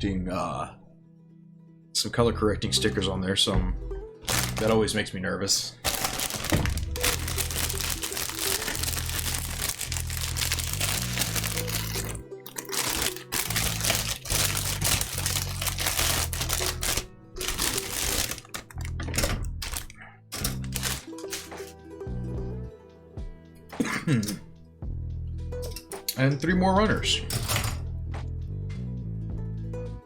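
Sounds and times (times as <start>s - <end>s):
background music with bass: 2.2s - 30.0s
plastic bags crinkling: 4.2s - 5.0s, 5.8s - 21.7s.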